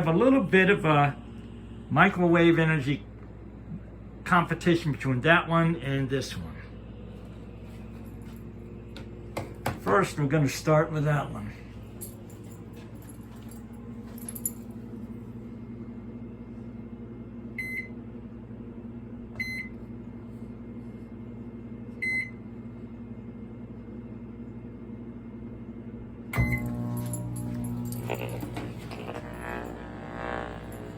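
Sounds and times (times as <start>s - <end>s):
low electrical hum: 0.0s - 30.9s
microwave keypad beeps: 17.6s - 17.9s, 19.4s - 19.7s, 22.0s - 22.4s, 26.4s - 26.7s.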